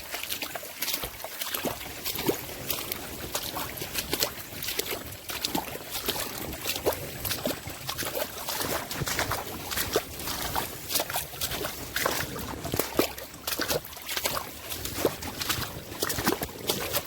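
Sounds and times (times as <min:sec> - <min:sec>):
feet splashing in water: 0:00.0 - 0:17.0
trickling stream: 0:00.0 - 0:17.0.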